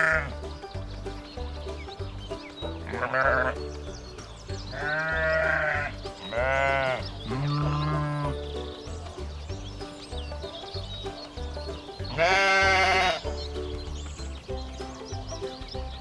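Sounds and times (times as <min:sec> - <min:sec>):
sheep bleating: 0:00.0 - 0:00.3, 0:02.8 - 0:03.6, 0:04.7 - 0:08.4, 0:12.1 - 0:13.3
background music with beat: 0:00.0 - 0:16.0.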